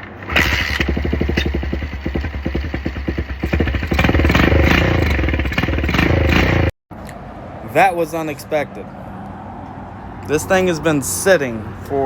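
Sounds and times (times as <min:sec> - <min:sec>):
small motorcycle engine running: 0:00.0 - 0:06.7.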